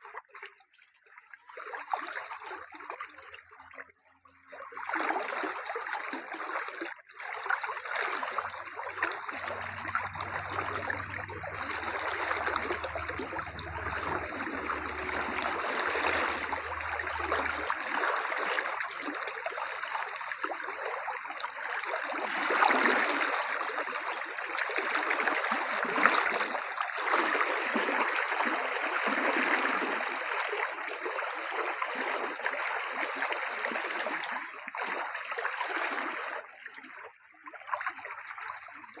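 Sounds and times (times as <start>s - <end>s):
running water splashing: 7.2s - 36.4s.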